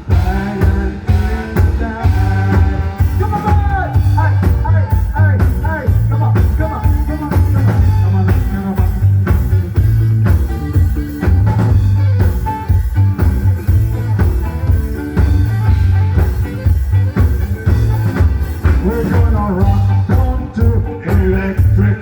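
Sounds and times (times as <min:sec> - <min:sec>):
person singing: 0:00.0 - 0:09.6, 0:18.2 - 0:22.0
loud rock music: 0:00.0 - 0:22.0.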